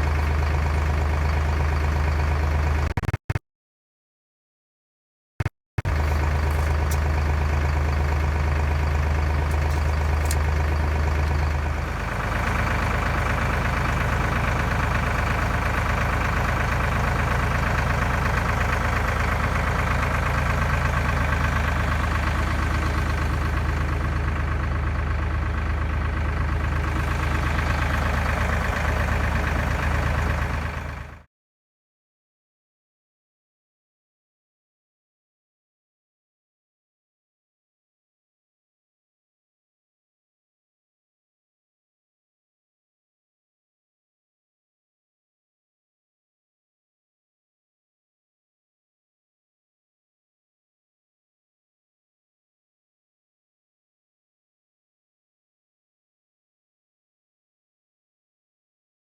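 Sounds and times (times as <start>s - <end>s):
engine running steadily: 0.0s - 3.4s, 5.4s - 31.3s.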